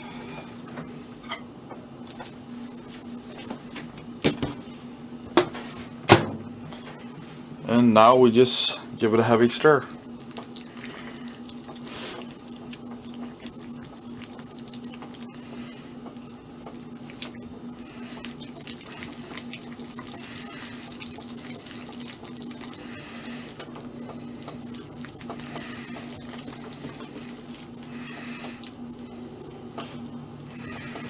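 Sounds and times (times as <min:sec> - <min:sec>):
steady low hum: 0:00.0 - 0:31.0
spoon stirring thick mixture: 0:09.1 - 0:30.2.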